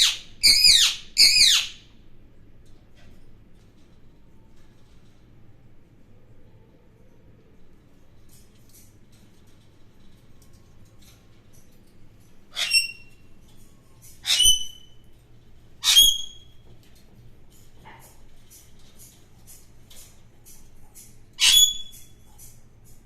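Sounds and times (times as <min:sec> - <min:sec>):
parakeet screeching: 0:00.0 - 0:01.8, 0:12.5 - 0:13.2, 0:14.2 - 0:14.9, 0:15.8 - 0:16.5, 0:21.4 - 0:22.0.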